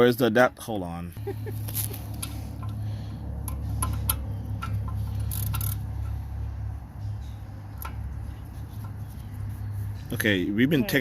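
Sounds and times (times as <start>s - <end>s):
steady low hum: 1.1s - 11.0s
hand tools clicking and clinking: 1.5s - 6.4s.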